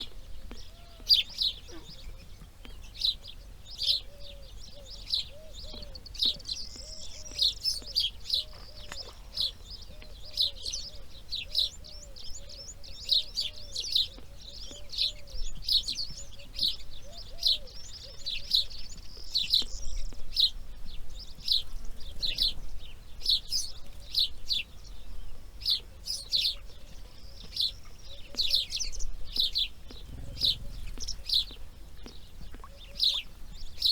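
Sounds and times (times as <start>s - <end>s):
birds chirping: 0.0s - 33.9s
bird trills: 30.0s - 31.6s.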